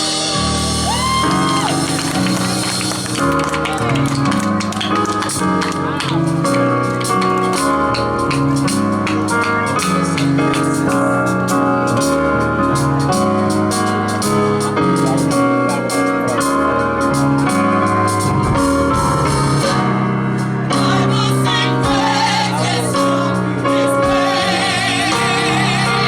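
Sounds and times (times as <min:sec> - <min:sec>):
keyboard chords: 0:00.0 - 0:26.0
steady beat: 0:00.8 - 0:26.0
singing voices with vibrato: 0:20.6 - 0:26.0.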